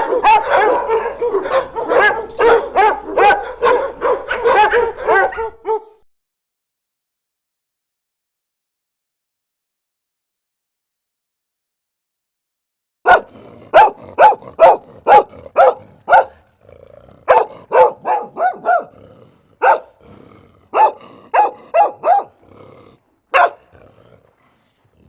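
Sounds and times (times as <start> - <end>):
dog barking: 0.0 - 6.0, 13.1 - 16.4, 17.3 - 19.0, 19.6 - 20.0, 20.7 - 22.4, 23.3 - 23.7.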